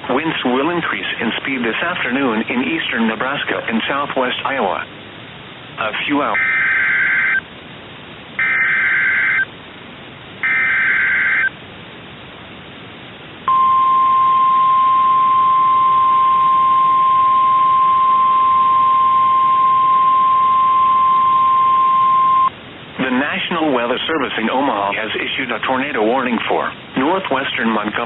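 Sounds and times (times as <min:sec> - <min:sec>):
buzzy digital squawks: 0:06.4 - 0:07.4, 0:08.4 - 0:09.4, 0:10.4 - 0:11.5
steady alarm tone: 0:06.4 - 0:07.4, 0:08.4 - 0:09.5, 0:10.4 - 0:11.5, 0:13.5 - 0:22.5.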